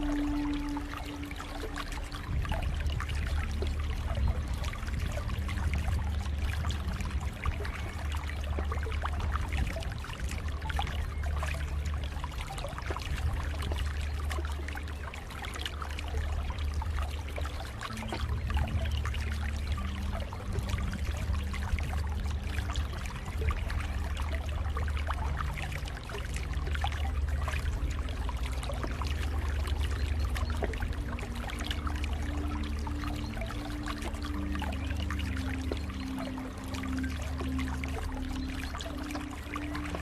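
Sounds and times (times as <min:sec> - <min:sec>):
deep rumble: 0:00.0 - 0:15.3
water flowing and splashing: 0:00.0 - 0:40.0.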